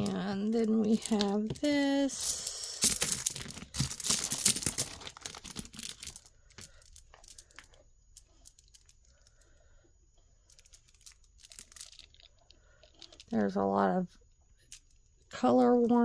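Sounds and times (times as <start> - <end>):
plastic bag crinkling: 0.0 - 9.0, 10.5 - 13.4
faint clicks of beads: 0.9 - 9.6, 10.5 - 13.4.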